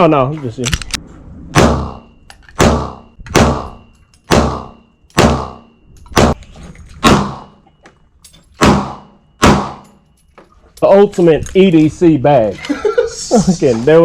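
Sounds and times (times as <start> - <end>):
gunshots: 1.5 - 6.4, 7.0 - 7.6, 8.6 - 9.8.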